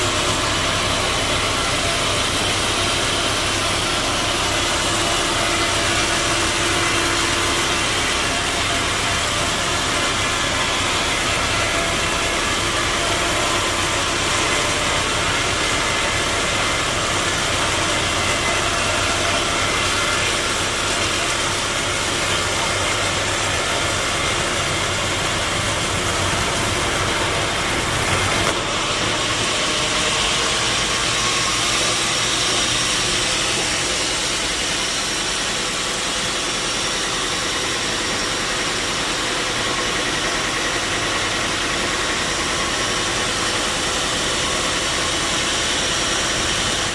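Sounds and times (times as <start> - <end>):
sawmill machinery drone: 0.0 - 46.9.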